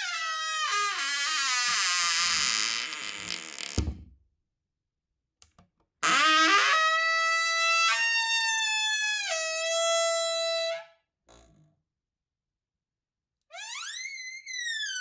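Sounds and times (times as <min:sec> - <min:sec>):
door hinge creaking: 0:00.0 - 0:04.1.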